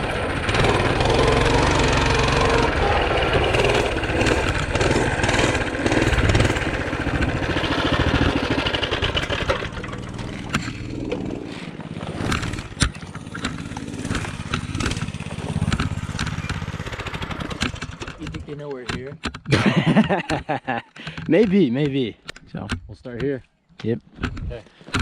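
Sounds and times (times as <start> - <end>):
trail bike engine running: 0.0 - 19.3
sharp clicks: 12.2 - 19.5.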